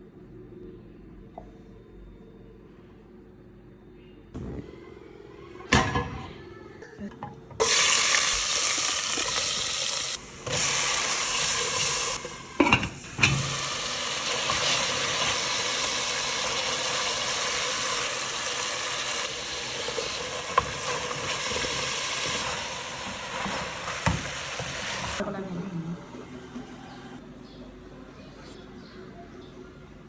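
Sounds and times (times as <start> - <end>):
food sizzling in a hot pan: 7.6 - 25.2.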